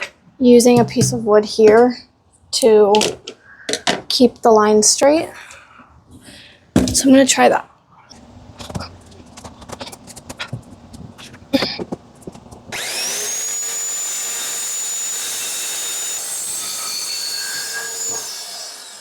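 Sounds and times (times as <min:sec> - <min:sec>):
circular saw cutting wood: 0:12.7 - 0:19.0.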